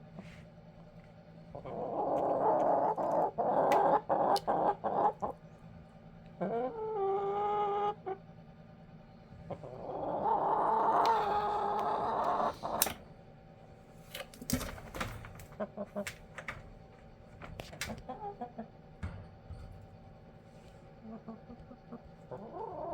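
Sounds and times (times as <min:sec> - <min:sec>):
soft chicken clucks: 0:01.5 - 0:05.5, 0:06.2 - 0:08.3, 0:09.4 - 0:12.9, 0:17.9 - 0:18.8, 0:20.8 - 0:22.9.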